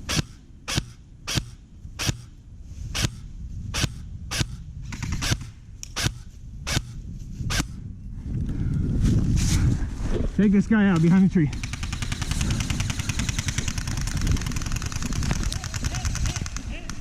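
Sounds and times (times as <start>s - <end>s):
airsoft rifle shots: 0.0s - 7.7s, 11.0s - 17.0s.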